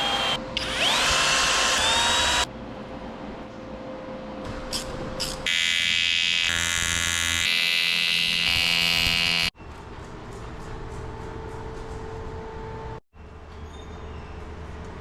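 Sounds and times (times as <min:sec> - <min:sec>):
electric welding arc buzzing: 0:05.2 - 0:09.6.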